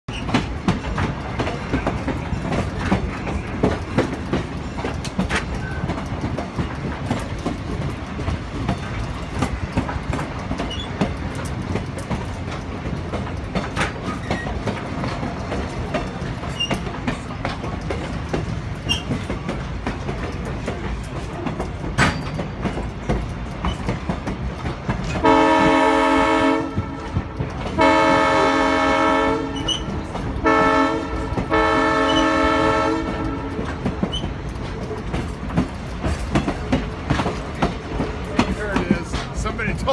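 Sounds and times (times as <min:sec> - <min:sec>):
railroad cars clattering on track: 0:00.1 - 0:39.9
train horn blasts: 0:25.2 - 0:33.9.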